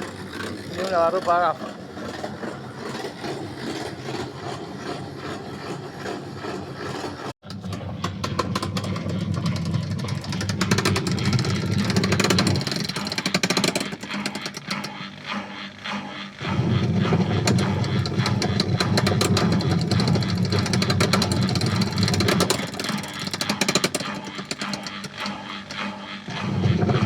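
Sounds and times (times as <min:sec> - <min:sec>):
washing machine humming: 0:00.0 - 0:27.0
clicking gearbox rattle: 0:07.4 - 0:15.0, 0:16.9 - 0:27.0.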